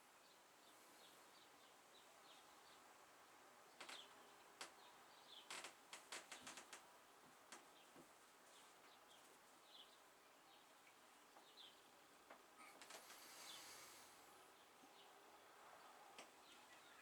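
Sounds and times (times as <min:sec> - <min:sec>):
faint bird-like chirps: 0:16.4 - 0:17.0.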